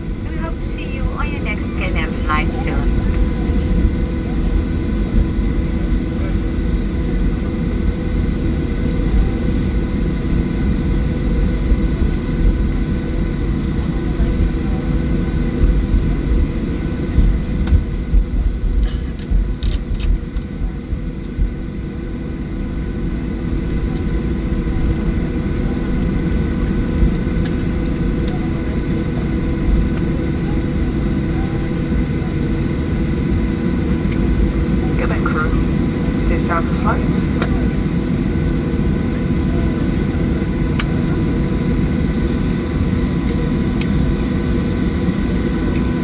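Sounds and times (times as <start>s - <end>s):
engine and air-conditioning hum: 0.0s - 9.4s, 12.6s - 20.5s, 31.3s - 38.5s
aircraft cabin rumble: 0.0s - 46.0s.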